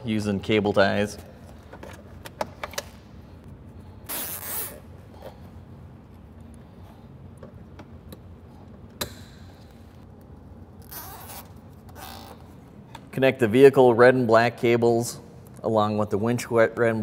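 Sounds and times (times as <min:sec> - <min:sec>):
cable tie zipping rasp: 0:10.8 - 0:12.4.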